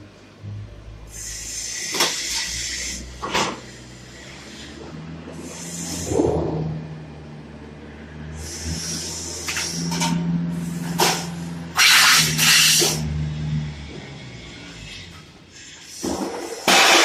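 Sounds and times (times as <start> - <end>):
hissing bursts: 11.8 - 13.0.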